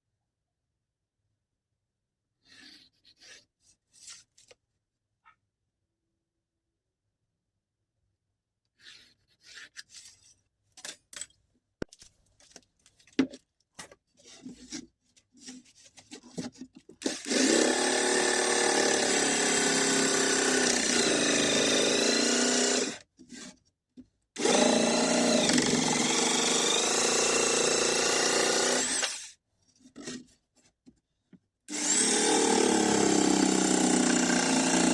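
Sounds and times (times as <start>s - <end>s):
power tool motor whining: 17.1s - 23.0s, 24.4s - 29.3s, 31.7s - 34.9s.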